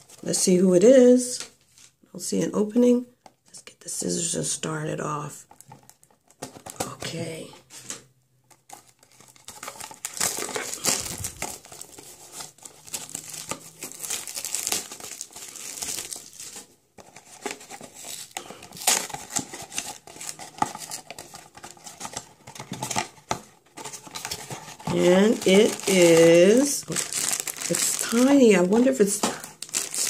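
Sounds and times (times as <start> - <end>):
cardboard packaging tearing: 8.5 - 30.0.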